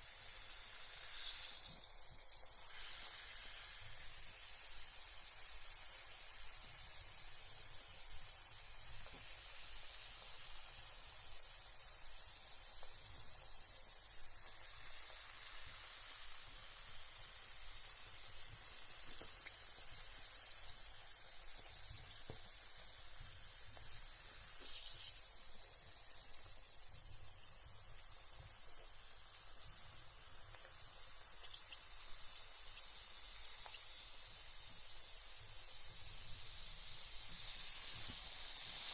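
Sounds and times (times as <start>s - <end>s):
bath bomb fizzing in water: 0.0s - 38.9s
faint ticks: 32.6s - 34.0s.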